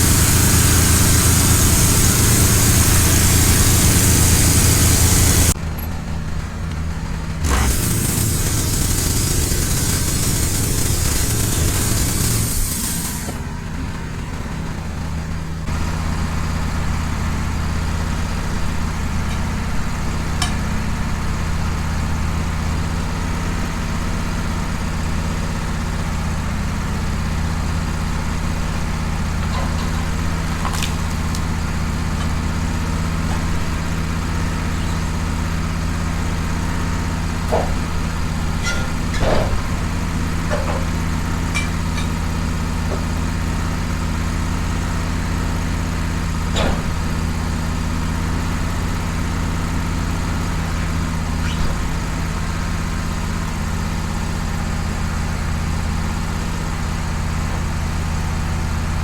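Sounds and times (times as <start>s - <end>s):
sawmill engine idling: 0.0s - 59.0s.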